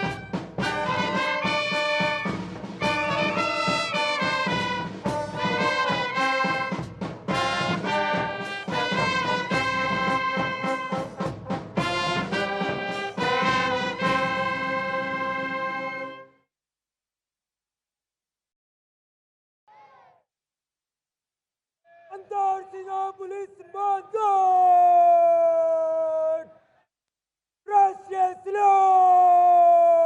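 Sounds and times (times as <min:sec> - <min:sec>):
military brass band playing: 0:00.0 - 0:16.3.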